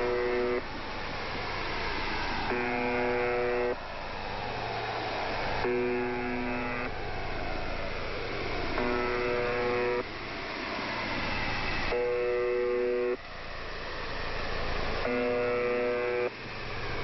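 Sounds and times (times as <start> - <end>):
electric buzzer: 0.0 - 0.6, 2.5 - 3.8, 5.6 - 6.9, 8.8 - 10.1, 11.9 - 13.2, 15.0 - 16.4
steady background hiss: 0.0 - 17.0.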